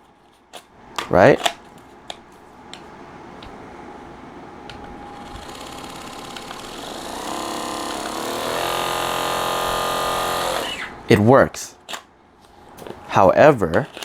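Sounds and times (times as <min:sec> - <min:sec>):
massage gun motor whine: 0:04.8 - 0:11.1.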